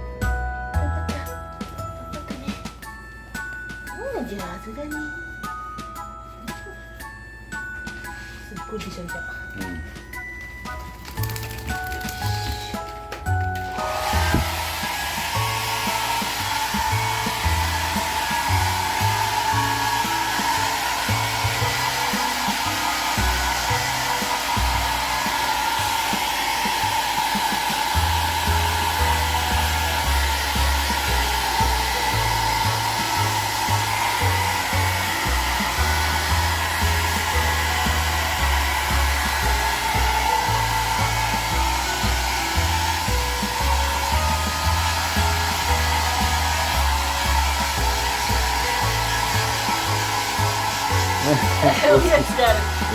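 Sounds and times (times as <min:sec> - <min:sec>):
hair dryer blowing: 0:10.7 - 0:52.9.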